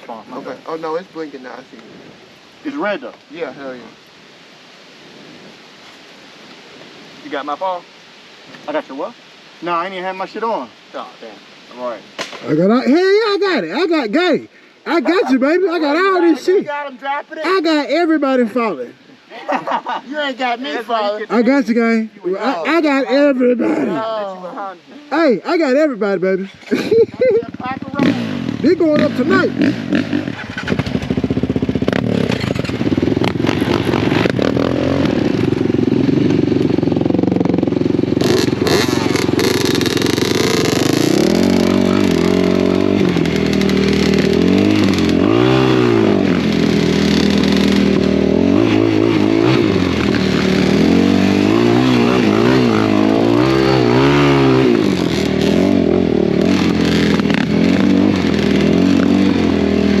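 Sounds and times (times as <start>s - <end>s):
atv engine revving: 25.2s - 60.0s.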